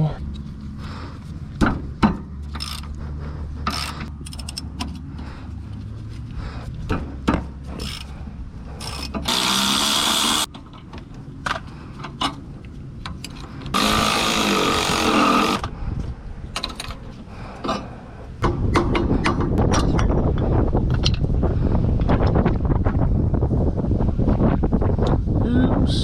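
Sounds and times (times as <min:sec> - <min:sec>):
impact wrench running: 0:03.7 - 0:04.1, 0:08.8 - 0:10.5, 0:13.7 - 0:15.6
wind rumble on microphone: 0:11.1 - 0:26.0.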